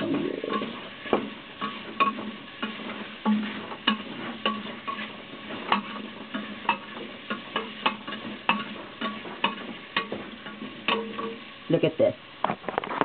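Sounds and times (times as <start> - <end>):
meat sizzling in a pan: 0.0 - 12.5
utensil clicking against pan: 1.6 - 11.4.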